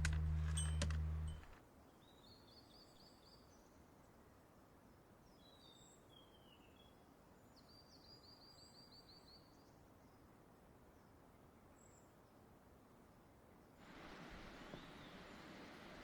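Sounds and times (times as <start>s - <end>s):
background hiss: 13.8s - 16.0s.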